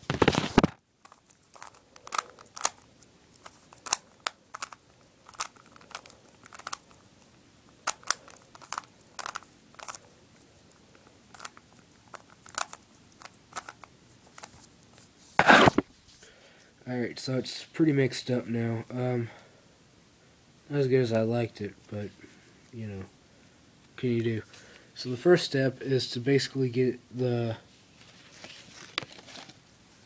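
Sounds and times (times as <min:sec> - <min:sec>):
puzzle cube layers clicking: 0:01.1 - 0:07.0, 0:07.8 - 0:10.0, 0:11.3 - 0:14.6.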